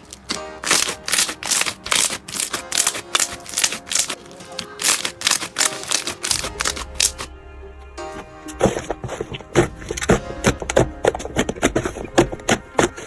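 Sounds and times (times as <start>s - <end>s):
crunchy slime crackling and popping: 0.0s - 7.3s
background music: 0.0s - 13.0s.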